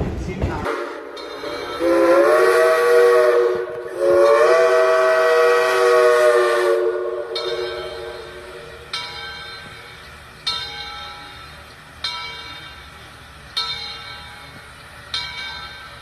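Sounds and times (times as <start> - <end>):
steam locomotive whistle blasts: 0.7 - 8.8.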